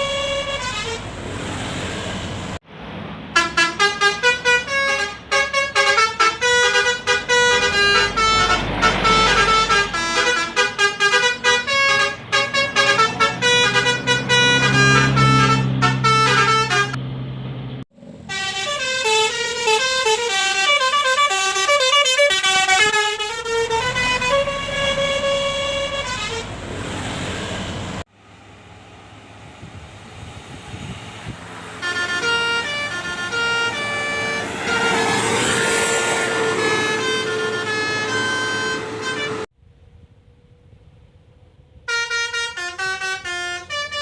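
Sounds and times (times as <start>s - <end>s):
bus musical horns playing tunes: 0.0s - 2.5s, 3.3s - 17.0s, 18.1s - 28.1s, 31.3s - 39.5s, 41.8s - 44.0s.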